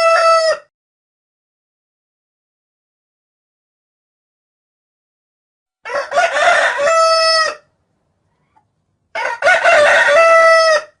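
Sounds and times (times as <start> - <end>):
rooster crowing: 0.0 - 0.7, 5.8 - 7.7, 9.1 - 11.0.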